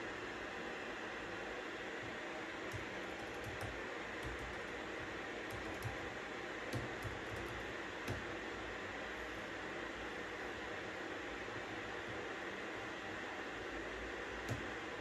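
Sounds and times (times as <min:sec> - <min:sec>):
keyboard typing: 0:02.0 - 0:08.3, 0:14.4 - 0:14.8.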